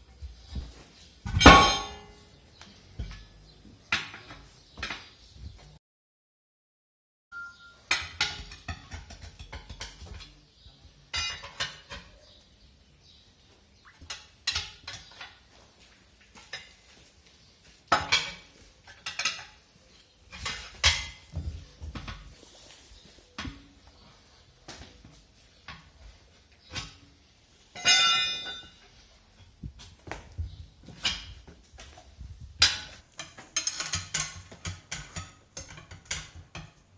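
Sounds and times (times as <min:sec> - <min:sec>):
pry bars clanking on steel rim: 0:32.6 - 0:36.9.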